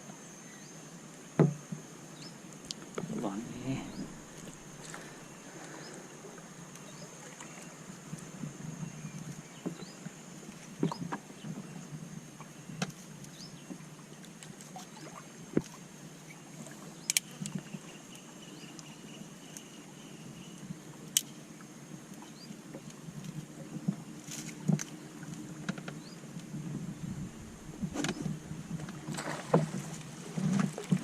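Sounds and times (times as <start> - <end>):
high insect hum: 0.0 - 31.0
light water sounds: 2.5 - 11.6, 12.2 - 31.0
knocks and clicks on boat: 25.6 - 26.1, 27.0 - 31.0.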